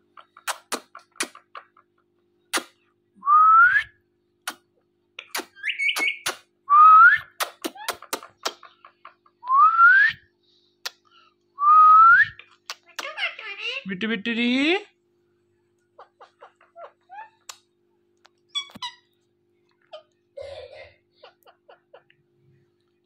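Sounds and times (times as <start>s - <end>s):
parrot chirp: 5.2s - 6.5s, 16.0s - 17.7s, 18.5s - 19.2s.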